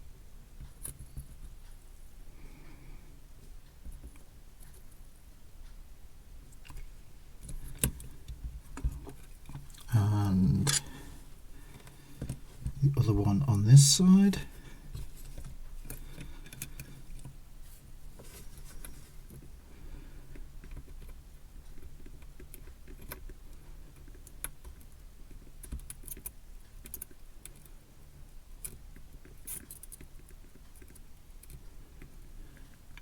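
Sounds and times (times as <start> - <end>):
low steady hum: 0.0 - 22.3.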